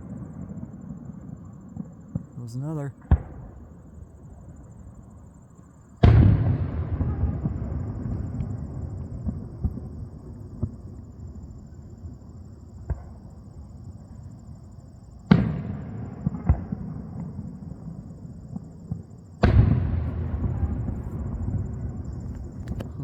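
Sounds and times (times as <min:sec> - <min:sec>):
fireworks booms with rumbling echo: 0:00.0 - 0:05.0, 0:06.0 - 0:12.2, 0:12.8 - 0:13.9, 0:15.2 - 0:23.0
crickets chirping: 0:00.0 - 0:23.0
fireworks cracks: 0:22.1 - 0:23.0.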